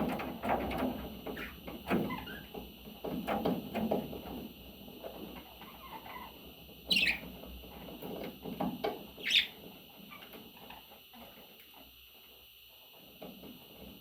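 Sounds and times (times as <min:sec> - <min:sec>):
budgerigar chirping: 0:06.9 - 0:07.2, 0:09.2 - 0:09.6.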